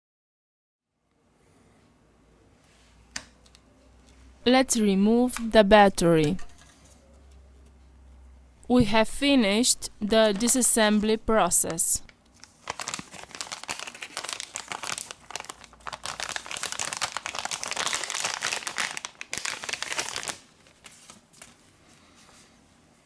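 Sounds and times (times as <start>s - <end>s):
thin plastic film crinkling: 12.3s - 21.8s.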